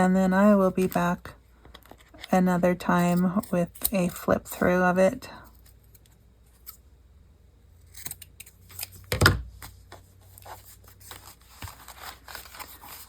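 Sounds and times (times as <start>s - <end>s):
paper rustling: 9.6s - 13.0s.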